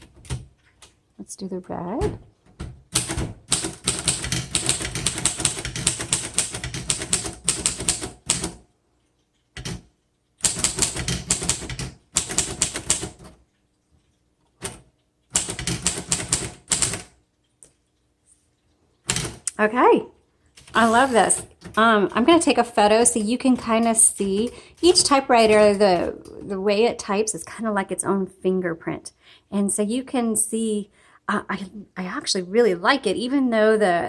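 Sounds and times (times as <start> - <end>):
manual typewriter keystrikes: 2.6 - 8.7, 9.5 - 13.4, 14.6 - 17.2, 19.0 - 19.5.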